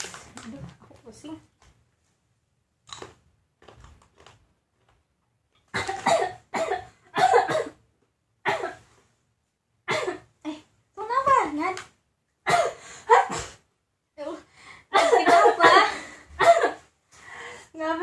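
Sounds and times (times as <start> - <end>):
person coughing: 5.8 - 7.8, 8.5 - 8.8, 9.9 - 10.3, 12.5 - 13.6, 14.9 - 16.9.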